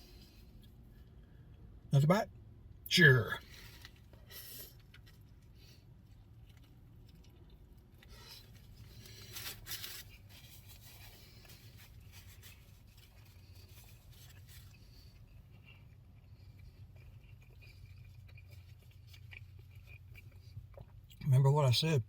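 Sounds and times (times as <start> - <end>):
low steady hum: 0.0 - 22.0
sandwich paper wrapper rustling: 3.4 - 20.3.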